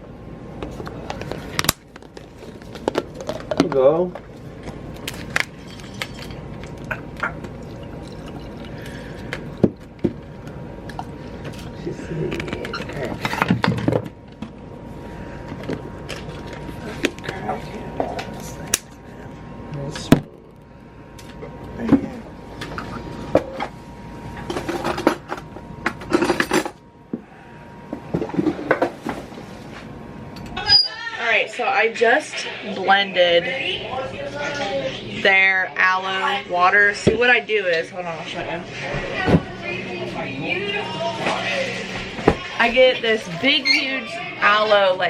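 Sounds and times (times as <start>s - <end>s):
dishes and utensils clattering: 5.6s - 6.6s
liquid pouring into container: 6.7s - 9.9s.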